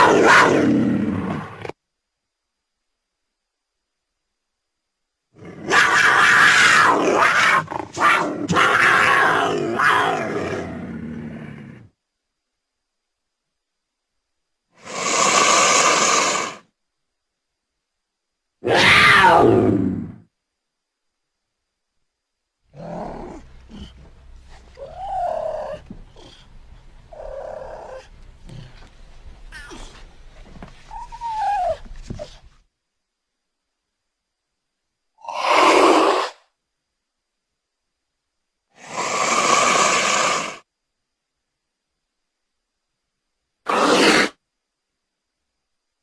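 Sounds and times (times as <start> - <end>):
mountain lion calling: 22.7 - 30.2.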